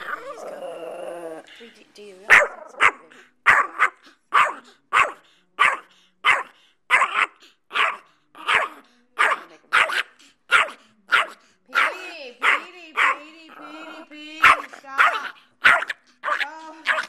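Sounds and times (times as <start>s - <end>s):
dog barking: 2.3s - 13.3s, 14.4s - 17.0s.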